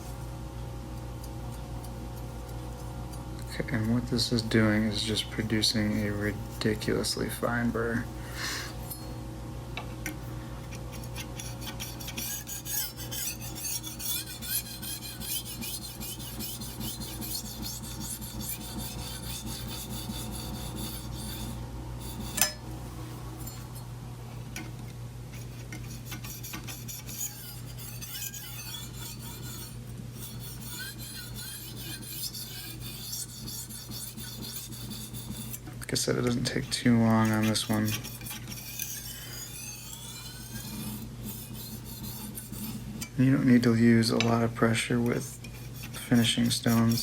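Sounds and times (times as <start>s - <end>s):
knife rasping on whetstone: 3.8s - 7.1s, 10.9s - 22.6s, 25.3s - 35.6s, 36.6s - 43.1s, 45.2s - 47.0s.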